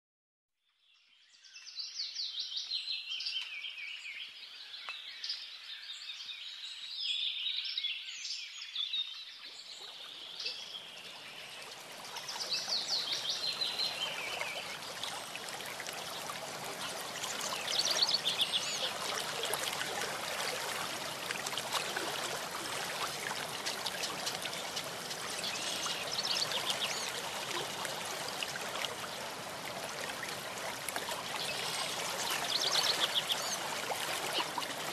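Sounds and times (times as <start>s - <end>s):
stream rushing: 11.2s - 34.9s.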